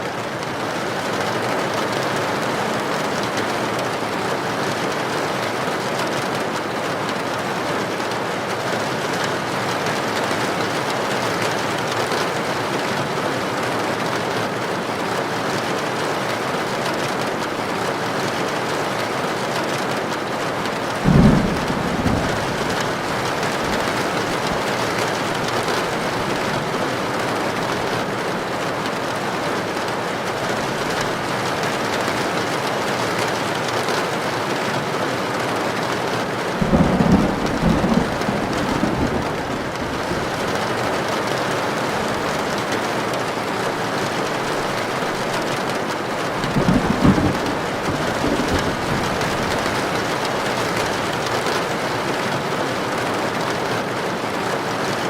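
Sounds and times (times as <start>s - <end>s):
heavy rain on a tin roof: 0.0s - 55.0s
low thunder crack: 21.0s - 27.8s, 36.6s - 40.6s, 46.4s - 50.1s.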